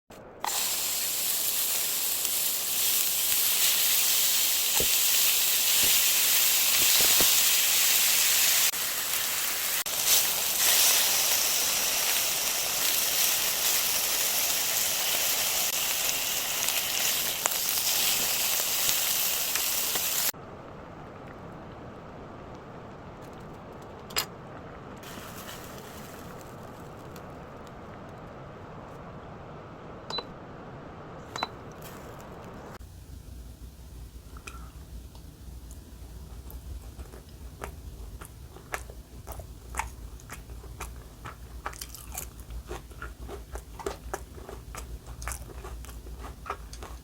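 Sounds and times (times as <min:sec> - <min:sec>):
food sizzling in a pan: 0:00.4 - 0:20.4, 0:25.0 - 0:27.2
faint hiss: 0:25.0 - 0:30.0.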